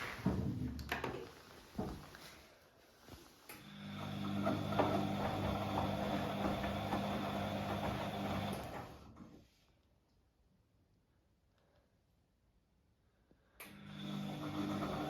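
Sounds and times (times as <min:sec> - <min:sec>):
washing machine motor spinning: 0:03.7 - 0:09.1, 0:13.8 - 0:15.0.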